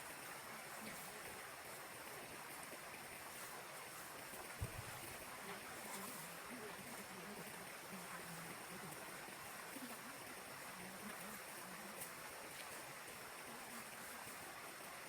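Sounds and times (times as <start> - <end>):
faint distant voices: 4.6 - 15.0.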